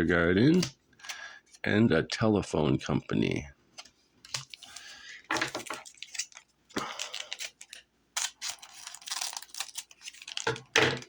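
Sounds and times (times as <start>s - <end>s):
cards rustling and clicking: 3.8s - 11.0s.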